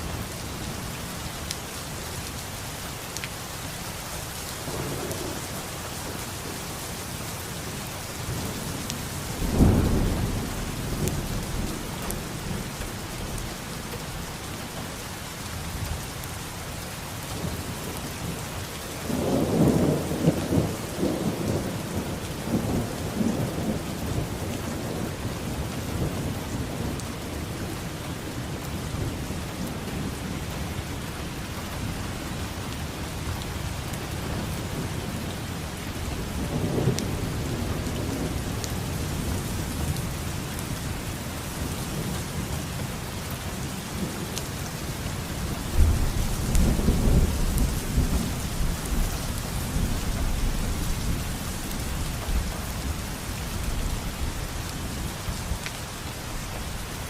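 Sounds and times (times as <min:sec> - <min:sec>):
rain falling: 0:00.0 - 0:57.0
thunder rumbling: 0:08.2 - 0:13.7, 0:45.4 - 0:55.6.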